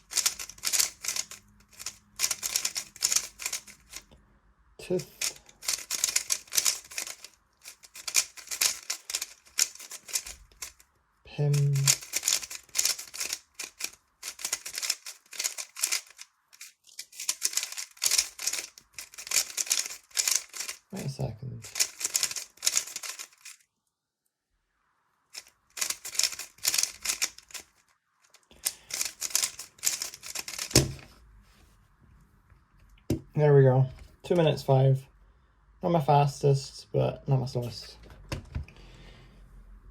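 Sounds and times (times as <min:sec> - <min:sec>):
puzzle cube clicking turns: 0:00.0 - 0:04.1, 0:05.0 - 0:10.8, 0:11.5 - 0:23.6, 0:25.3 - 0:31.1.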